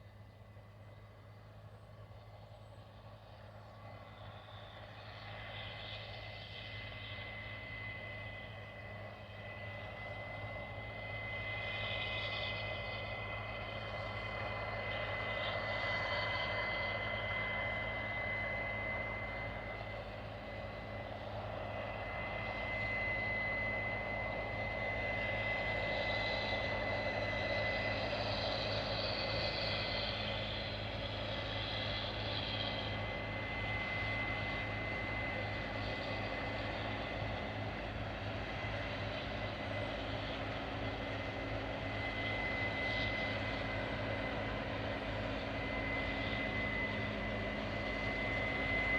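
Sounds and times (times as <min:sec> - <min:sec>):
combine harvester engine drone: 0:00.0 - 0:48.9.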